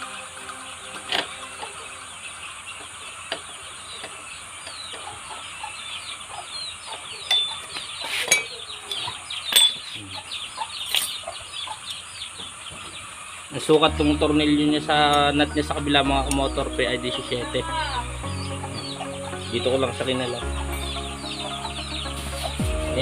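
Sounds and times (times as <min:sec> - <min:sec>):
birds chirping: 0:00.0 - 0:23.0
metal tools clinking: 0:07.2 - 0:10.0, 0:10.8 - 0:11.3.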